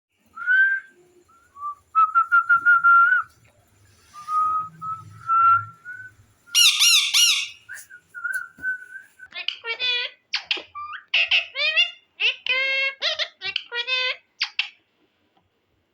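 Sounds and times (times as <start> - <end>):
parrot whistling: 4.0 - 9.2
parrot squawking: 6.5 - 7.8, 9.3 - 14.8.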